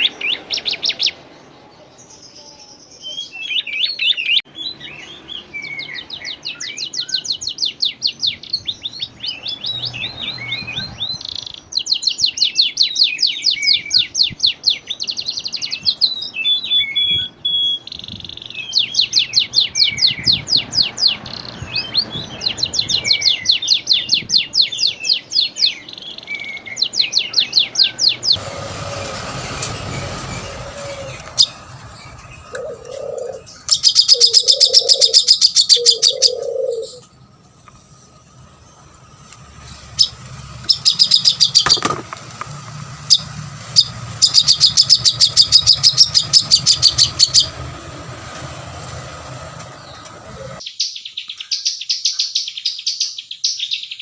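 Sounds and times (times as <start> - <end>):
songbird trilling: 2.0 - 28.4, 30.3 - 37.3, 39.6 - 42.0, 43.1 - 47.7, 49.7 - 54.0
low cooing: 32.4 - 33.5, 34.1 - 37.0.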